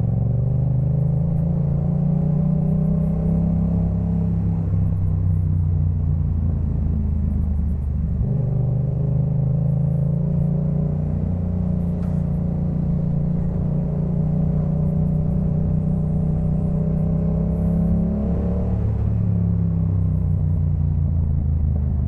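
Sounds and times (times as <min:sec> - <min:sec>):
motorcycle engine revving: 0:07.8 - 0:19.4.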